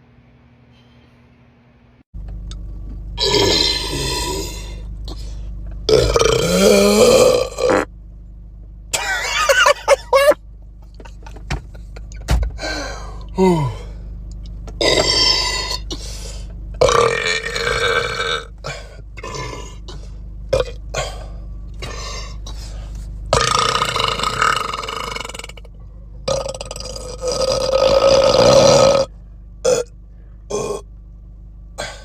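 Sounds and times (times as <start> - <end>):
person belching: 3.2 - 4.8, 5.9 - 7.9, 13.3 - 13.9, 14.8 - 15.9, 16.8 - 19.8, 20.5 - 21.3, 23.4 - 25.7, 26.3 - 29.1, 29.7 - 29.9, 30.5 - 30.8.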